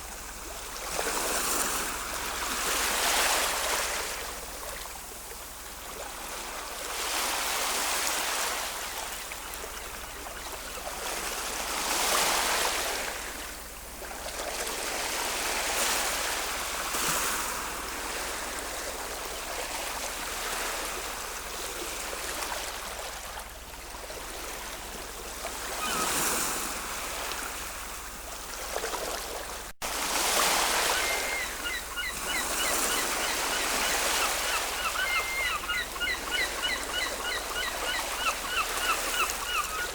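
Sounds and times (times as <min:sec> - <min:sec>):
ocean waves breaking: 0:00.0 - 0:39.9
faint bird calls: 0:25.5 - 0:26.6, 0:30.3 - 0:39.9.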